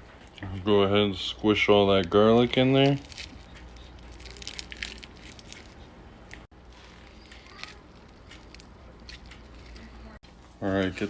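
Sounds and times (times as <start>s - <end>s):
soft squishing: 1.9s - 10.4s
garlic skins crinkling: 2.2s - 10.2s.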